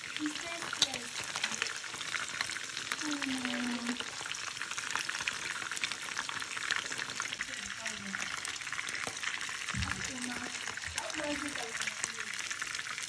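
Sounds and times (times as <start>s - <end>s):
food frying in hot oil: 0.0s - 13.0s.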